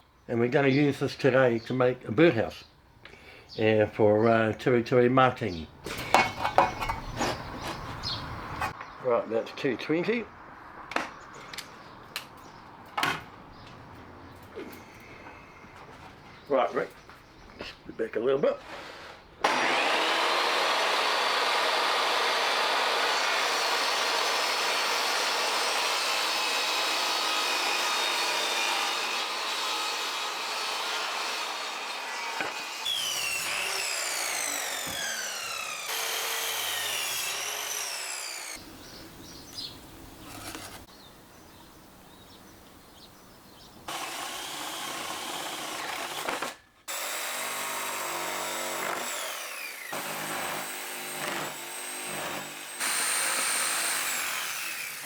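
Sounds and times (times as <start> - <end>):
power saw cutting plywood: 5.8 - 8.8, 18.6 - 38.6, 43.9 - 55.0.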